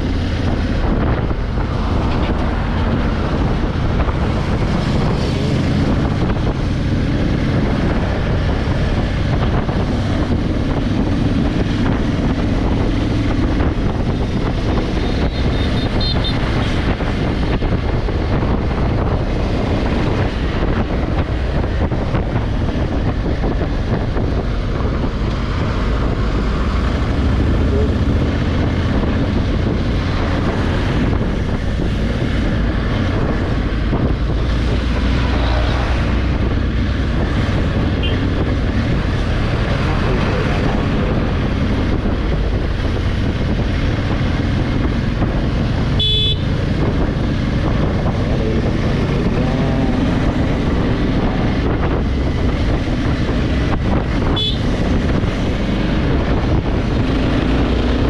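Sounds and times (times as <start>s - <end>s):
wind noise on microphone: 0.0s - 58.0s
motorcycle engine running: 36.4s - 58.0s
short horn beep: 46.0s - 46.4s.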